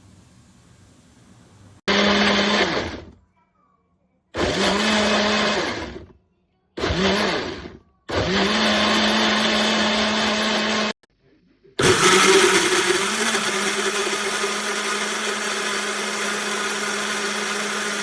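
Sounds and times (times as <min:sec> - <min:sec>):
blender motor pulsing: 0:01.8 - 0:03.2, 0:04.4 - 0:06.2, 0:06.8 - 0:11.0, 0:11.8 - 0:18.0.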